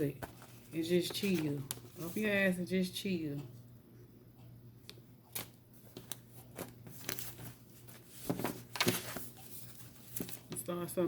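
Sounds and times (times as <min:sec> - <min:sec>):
cards being shuffled: 0:00.2 - 0:02.3, 0:05.3 - 0:10.6.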